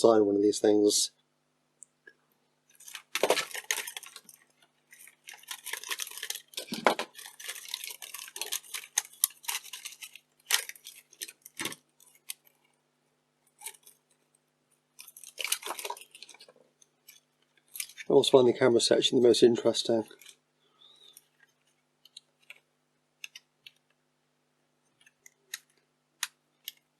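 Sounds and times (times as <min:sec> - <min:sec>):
plastic parts clicking and rattling: 0:02.7 - 0:12.8, 0:13.4 - 0:14.4, 0:15.0 - 0:18.1, 0:20.1 - 0:20.4, 0:21.0 - 0:22.6, 0:24.9 - 0:26.9.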